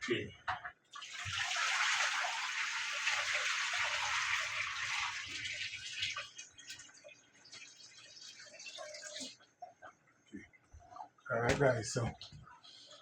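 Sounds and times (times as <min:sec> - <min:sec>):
tap water running: 0:00.6 - 0:09.4.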